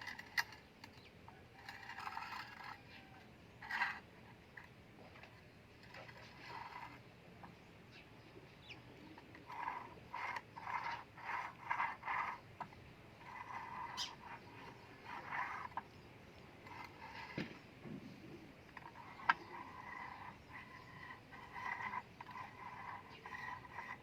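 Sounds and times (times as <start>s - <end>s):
hand tool working metal: 0.0s - 7.0s, 9.2s - 17.6s, 18.6s - 24.0s.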